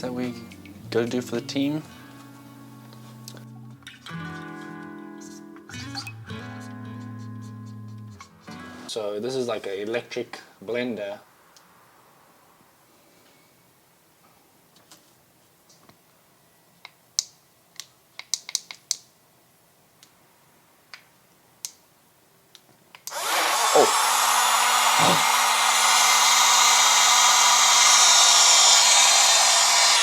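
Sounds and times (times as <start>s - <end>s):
blender motor whirring: 23.1s - 30.0s.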